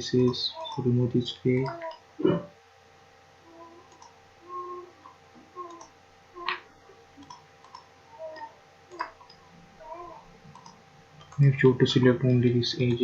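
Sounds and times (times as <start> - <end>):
computer mouse clicking: 3.9 - 4.2, 5.6 - 5.9, 7.2 - 7.9, 10.5 - 11.4.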